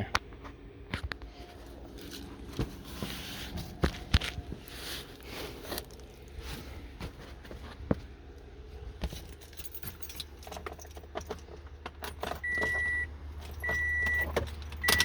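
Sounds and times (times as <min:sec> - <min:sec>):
steady low hum: 0:00.0 - 0:15.0
footsteps: 0:01.0 - 0:08.2.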